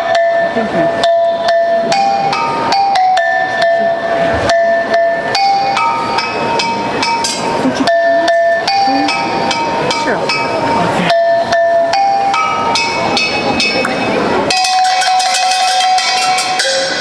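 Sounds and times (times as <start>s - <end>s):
bell-like metallic melody: 0.0s - 17.0s.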